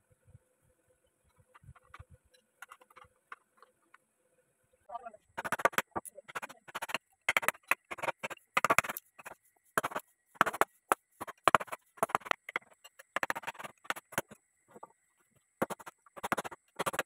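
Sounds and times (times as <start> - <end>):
rasping strokes on wood: 5.4 - 14.3, 15.6 - 17.0.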